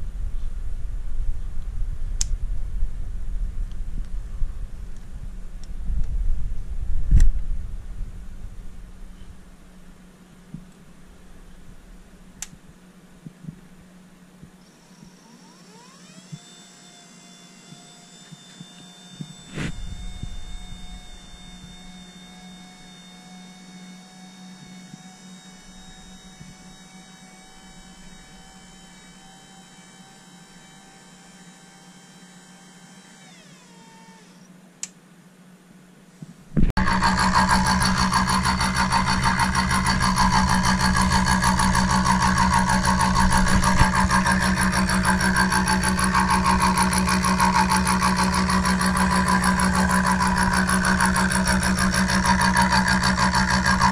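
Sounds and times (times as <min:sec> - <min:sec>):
power tool motor whining: 0:14.6 - 0:34.6, 0:36.8 - 0:53.9
loud machine running: 0:15.2 - 0:33.3, 0:36.7 - 0:53.9.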